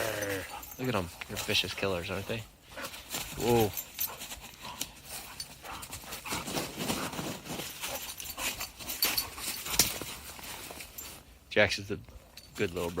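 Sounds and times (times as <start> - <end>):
dogs play-fighting: 0.0 - 11.3.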